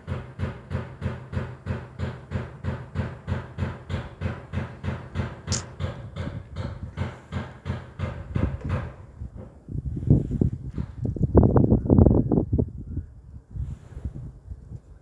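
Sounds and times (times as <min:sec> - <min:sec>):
heavy pounding on a door: 0:00.0 - 0:09.5
sharp click: 0:05.5 - 0:05.7.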